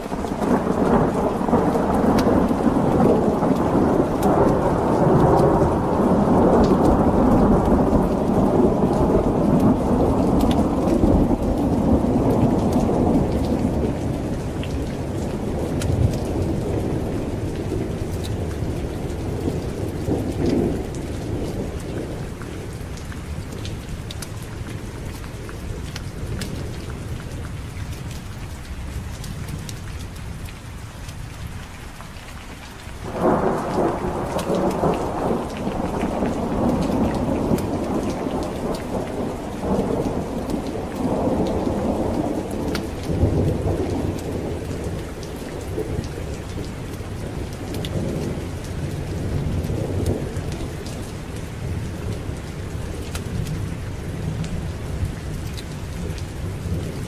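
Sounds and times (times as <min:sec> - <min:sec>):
thunderclap rolling: 0:00.0 - 0:22.8, 0:33.0 - 0:57.0
heavy rain: 0:00.0 - 0:57.0.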